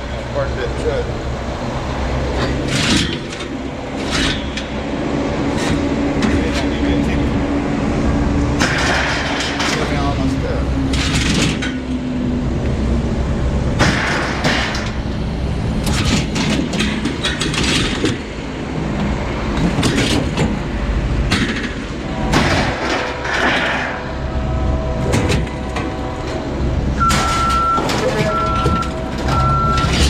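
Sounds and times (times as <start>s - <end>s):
truck engine running: 0.0s - 30.0s
metallic knocks and rattles: 8.6s - 10.1s, 15.8s - 18.4s, 19.5s - 20.7s.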